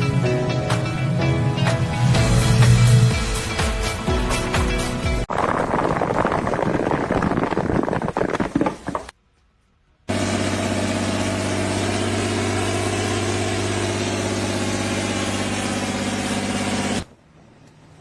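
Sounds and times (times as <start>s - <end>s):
dense noisy sound: 5.3s - 9.1s.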